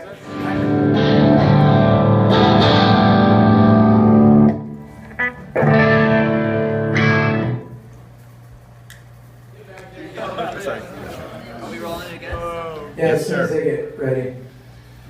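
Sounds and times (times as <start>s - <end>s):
electric guitar chords ringing: 0.2s - 8.2s.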